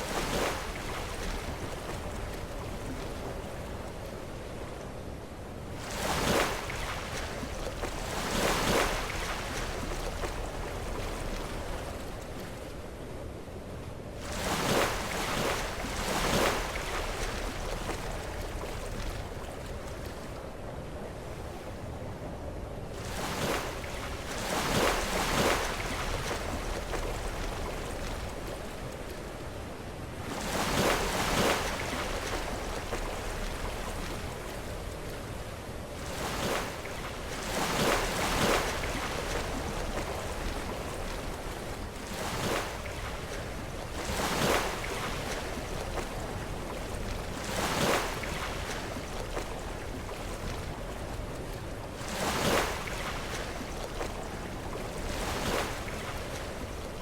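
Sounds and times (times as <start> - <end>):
surf washing: 14.2 - 20.5, 22.9 - 57.0.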